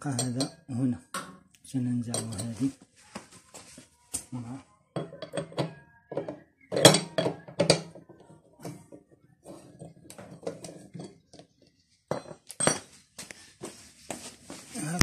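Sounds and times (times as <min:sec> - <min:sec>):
screwdriver on metal ring: 0:00.1 - 0:00.6.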